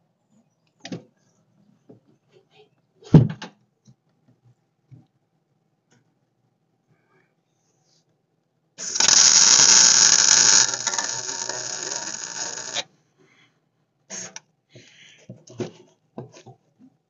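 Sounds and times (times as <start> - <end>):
welding arc buzzing and crackling: 8.8 - 12.8.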